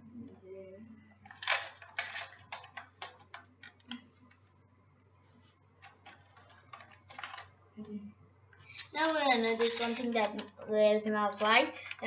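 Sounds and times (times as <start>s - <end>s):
plastic toy car clicking: 1.3s - 4.0s, 5.8s - 7.5s, 8.8s - 10.6s, 11.3s - 12.0s.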